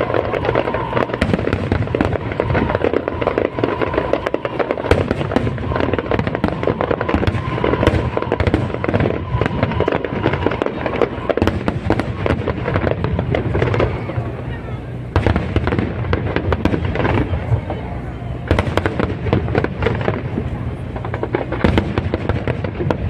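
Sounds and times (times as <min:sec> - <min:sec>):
fireworks bangs and crackling: 0:00.0 - 0:23.0.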